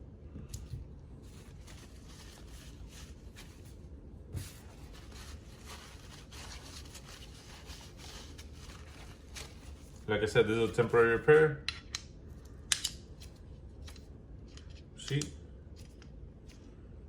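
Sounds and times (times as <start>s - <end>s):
low background hum: 0.0s - 17.0s
rubbing and handling of parts: 0.7s - 10.1s.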